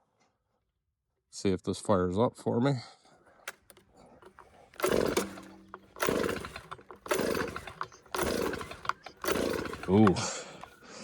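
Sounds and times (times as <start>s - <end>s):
leaf blower engine pull-start: 3.3s - 11.0s.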